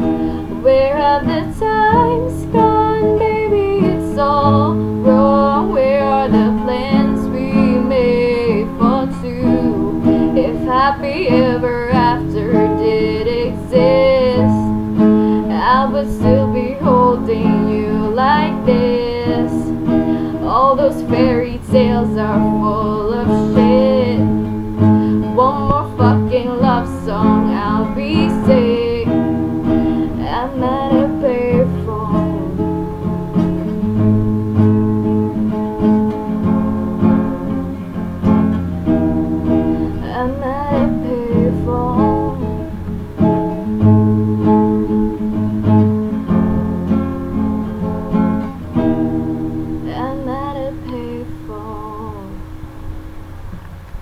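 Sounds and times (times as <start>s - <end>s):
acoustic guitar strumming: 0.0s - 54.0s
person singing wordless phrases: 15.5s - 19.8s, 20.4s - 24.4s, 25.2s - 29.2s, 30.1s - 32.6s, 39.9s - 42.6s, 49.9s - 52.4s.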